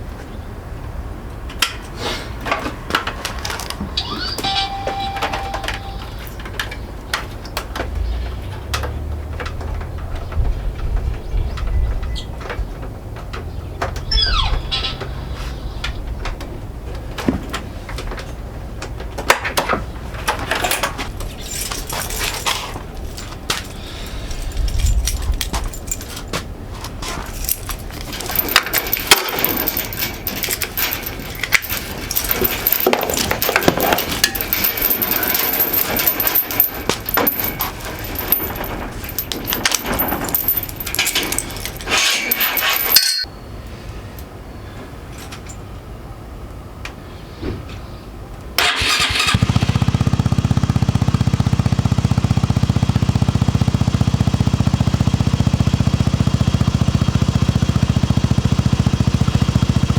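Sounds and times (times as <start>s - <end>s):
hand tools clinking on metal: 2.5s - 10.3s, 17.2s - 43.3s.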